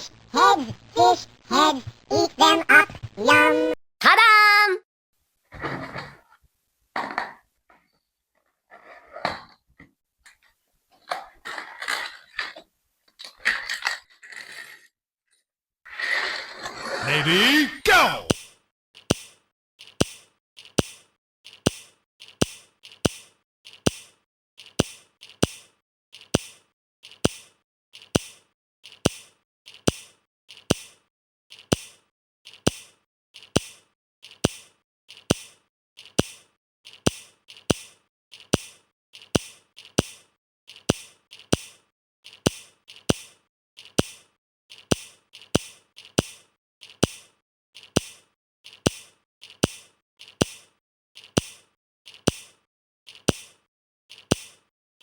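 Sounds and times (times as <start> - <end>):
plastic bricks clicking together: 10.3 - 14.9, 18.3 - 54.7.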